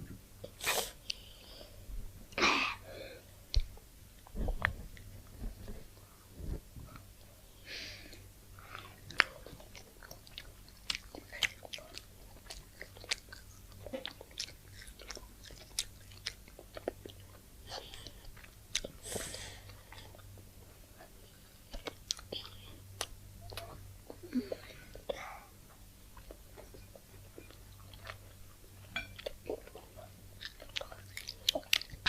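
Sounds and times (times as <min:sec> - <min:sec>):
chewing crunchy food: 0:08.6 - 0:19.0, 0:19.6 - 0:25.1, 0:25.7 - 0:32.0.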